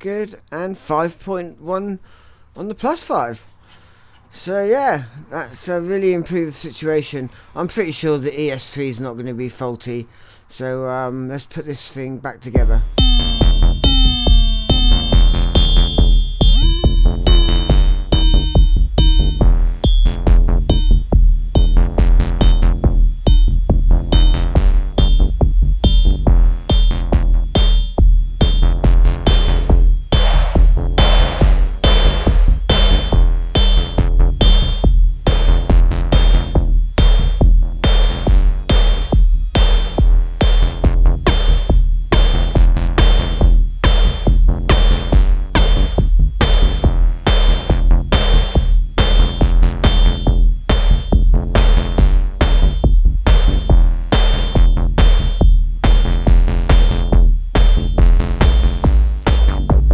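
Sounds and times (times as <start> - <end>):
sustained synthesizer tones: 12.6 - 35.6
drum machine beat: 12.6 - 59.9.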